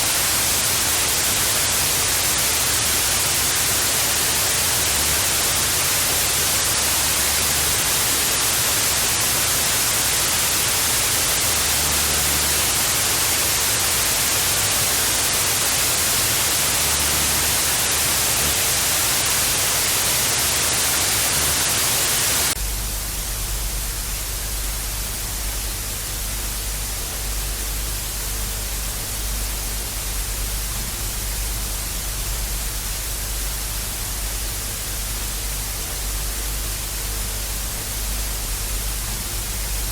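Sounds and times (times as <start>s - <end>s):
tv static hiss: 0.0s - 39.9s
low hum: 22.6s - 39.9s.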